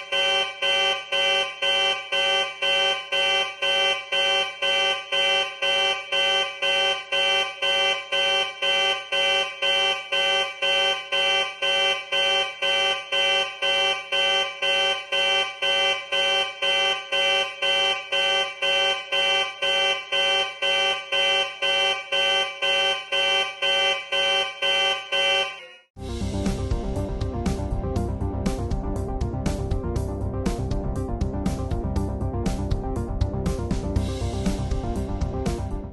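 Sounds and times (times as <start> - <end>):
pulsing alarm tone: 0.0 - 25.9.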